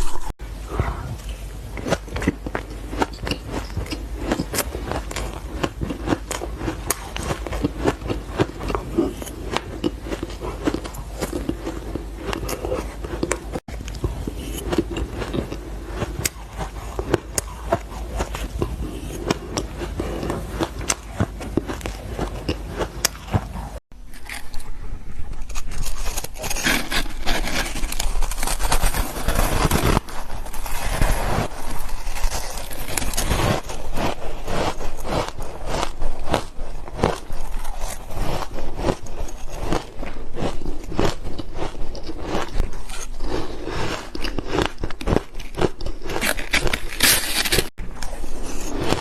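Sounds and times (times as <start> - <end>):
chewing crunchy ice: 1.6 - 49.0.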